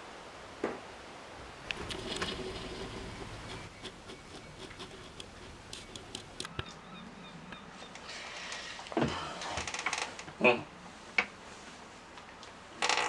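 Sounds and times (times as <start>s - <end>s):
faint steady hum: 0.0s - 13.0s
light clicks and ticks: 1.7s - 6.7s.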